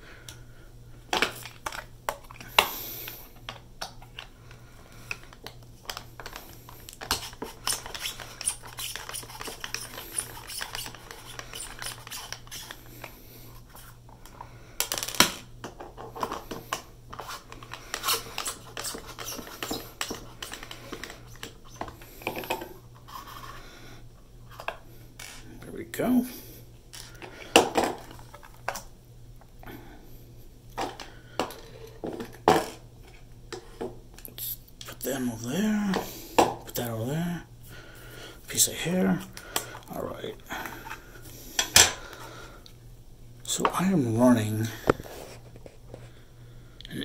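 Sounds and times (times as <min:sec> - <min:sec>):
screwdriver scratching and clicking on metal: 0:06.9 - 0:12.8, 0:17.2 - 0:21.8.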